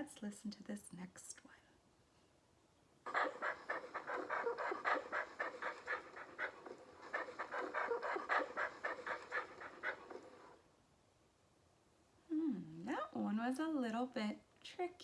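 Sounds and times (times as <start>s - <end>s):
dog panting hard: 3.1s - 10.6s.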